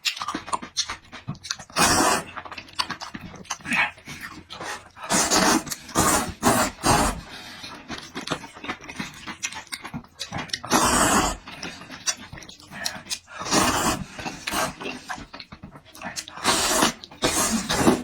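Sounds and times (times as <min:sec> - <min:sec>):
person slurping and chewing: 0:00.0 - 0:18.0
heavy mouth breaths: 0:03.5 - 0:09.4, 0:10.2 - 0:18.0.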